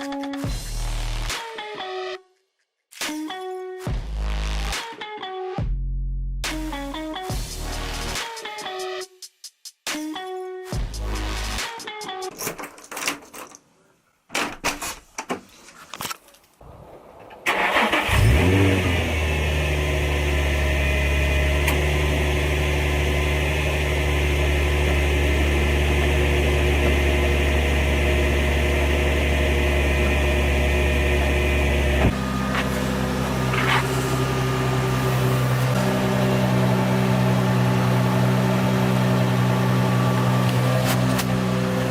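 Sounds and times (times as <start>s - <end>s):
car starter cranking: 17.4s - 19.1s
car engine idling: 17.5s - 41.9s.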